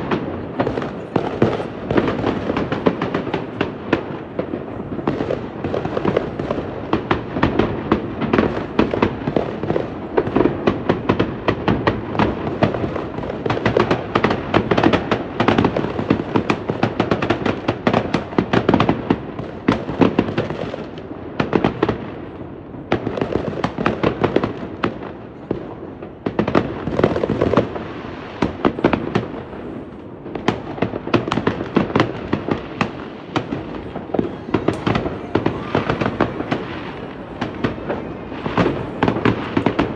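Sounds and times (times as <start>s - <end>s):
fireworks cracking and banging: 0.0s - 39.9s.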